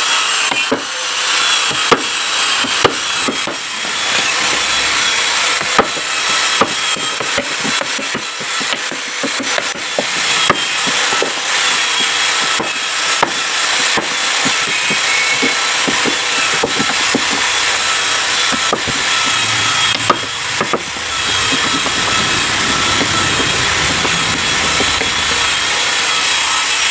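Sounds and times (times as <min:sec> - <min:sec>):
steady mechanical noise: 0:00.6 - 0:26.9
low rumble: 0:02.6 - 0:06.3, 0:16.2 - 0:26.9.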